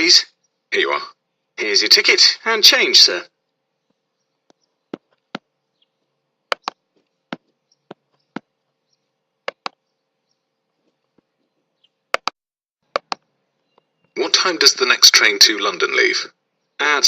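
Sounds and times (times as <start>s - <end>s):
faint steady hum: 0.0s - 12.1s.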